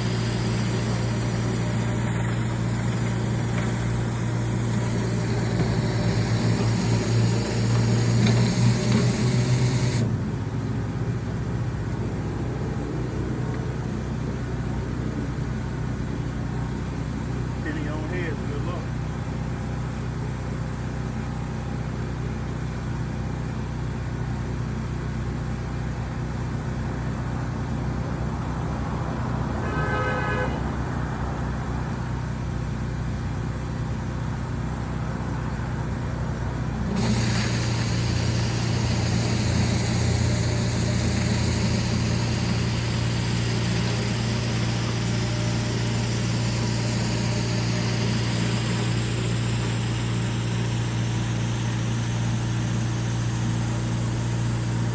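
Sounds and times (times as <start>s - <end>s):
high steady whine: 0.0s - 10.2s, 36.8s - 54.9s
pressure washer engine running: 0.0s - 10.2s, 36.9s - 54.9s
horn toot: 29.6s - 30.6s.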